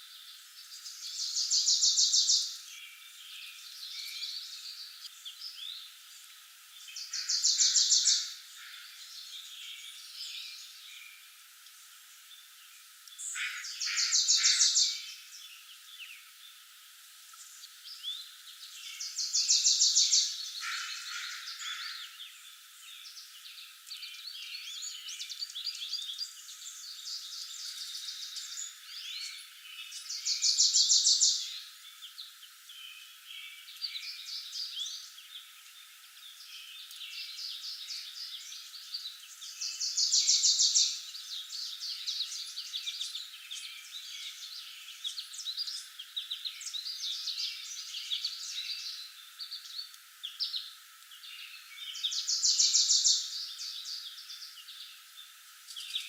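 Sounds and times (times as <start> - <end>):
songbirds chirping and singing: 0.0 - 56.0
loud rapid bird trill: 7.0 - 10.5, 13.2 - 15.4, 18.8 - 22.5.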